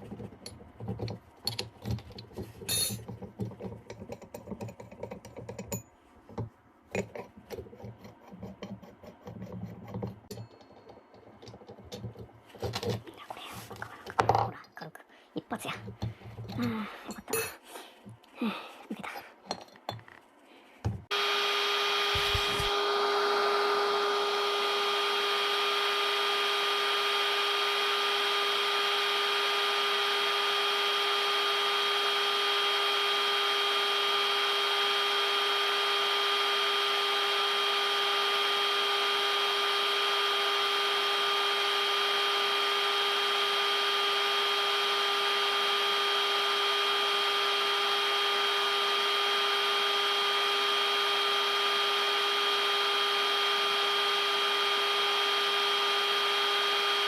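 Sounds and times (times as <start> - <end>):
heat gun blowing: 21.1 - 57.0.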